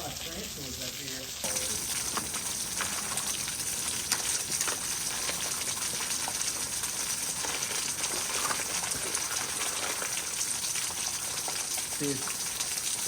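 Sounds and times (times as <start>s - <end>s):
waterfall splashing onto rock: 0.0s - 13.0s.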